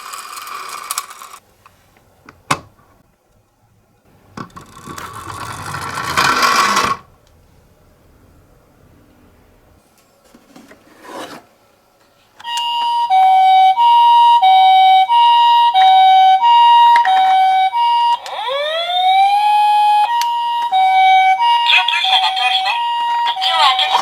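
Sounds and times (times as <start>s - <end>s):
scraping rub: 10.2s - 11.5s
rising wail siren: 12.4s - 24.0s
toy ambulance two-tone siren: 12.4s - 24.0s.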